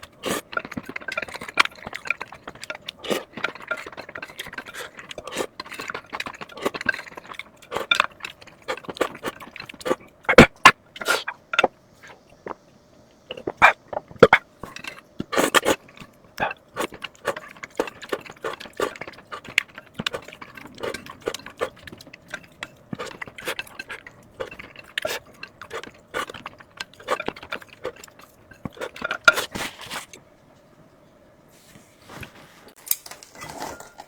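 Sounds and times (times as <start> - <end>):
chewing and mouth noises: 0.0 - 30.2
faint steady hum: 0.0 - 34.0
utensils clinking on dishes: 16.8 - 30.2, 32.9 - 34.0.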